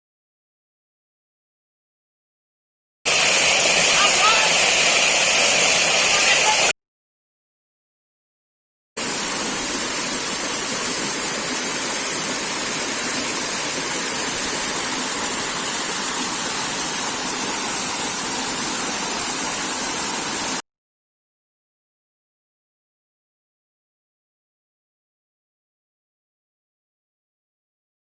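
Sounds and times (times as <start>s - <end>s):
waterfall rushing: 3.1s - 6.7s, 9.0s - 20.6s.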